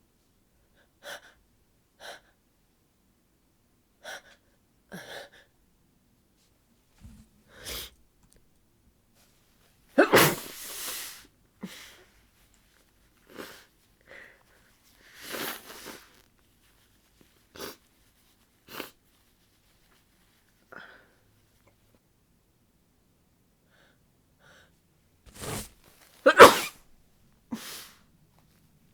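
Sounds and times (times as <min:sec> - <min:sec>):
woman sneezing: 0:10.0 - 0:11.1, 0:26.3 - 0:26.8
congested sniffles: 0:10.0 - 0:11.3, 0:25.3 - 0:26.8.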